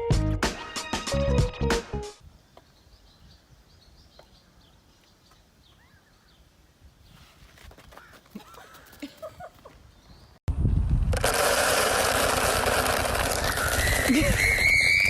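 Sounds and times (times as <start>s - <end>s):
small birds chirping: 2.3s - 10.4s.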